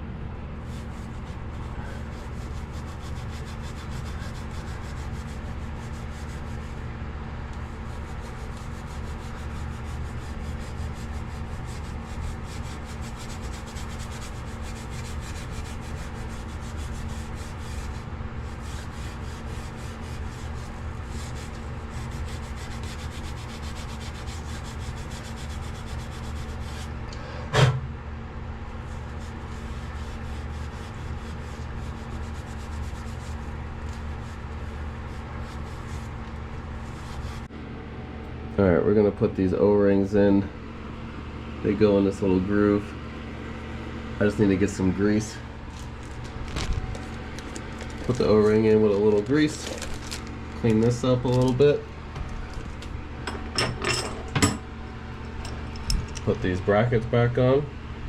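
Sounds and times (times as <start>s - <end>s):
low machinery hum: 0.0s - 58.0s
hand rubbing and sanding: 0.6s - 6.9s, 7.5s - 27.0s, 28.7s - 37.5s, 44.3s - 52.8s.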